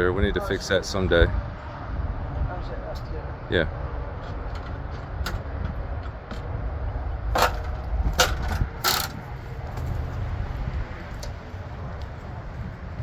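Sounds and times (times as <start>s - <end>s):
ladder clattering: 7.3s - 9.8s.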